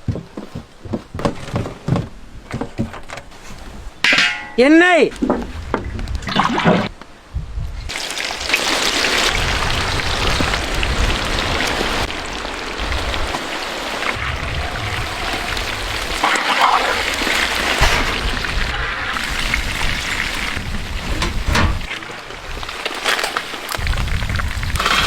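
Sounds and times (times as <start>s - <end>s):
food sizzling in hot oil: 7.9s - 21.1s.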